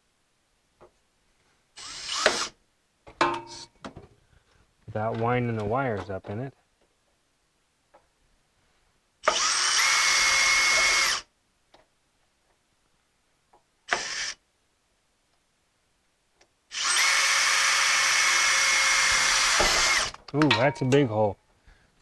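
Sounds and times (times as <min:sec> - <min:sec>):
power drill whining: 0:01.8 - 0:02.6, 0:09.2 - 0:11.3, 0:13.9 - 0:14.4, 0:16.7 - 0:20.3.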